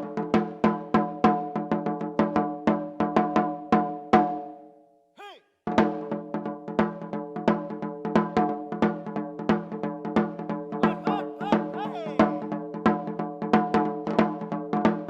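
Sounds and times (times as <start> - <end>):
rising and falling call: 10.8 - 12.4.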